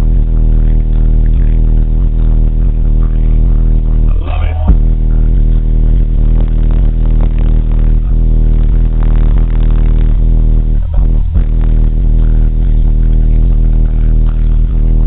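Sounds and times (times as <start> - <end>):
bass-heavy music through car speakers: 0.0 - 15.0.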